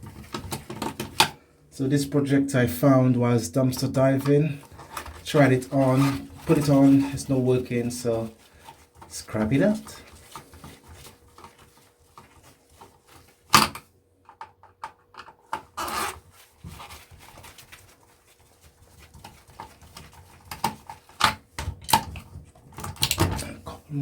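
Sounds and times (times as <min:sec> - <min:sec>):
scraping rustle: 0:04.0 - 0:13.6, 0:15.7 - 0:21.4.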